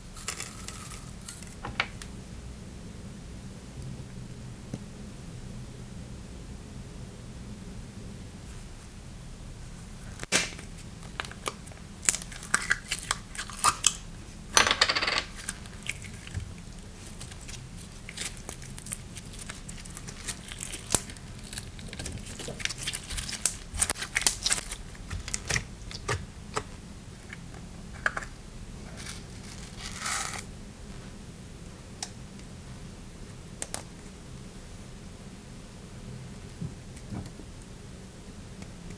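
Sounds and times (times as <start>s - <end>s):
crinkly rustle: 15.4s - 26.2s, 28.8s - 31.2s.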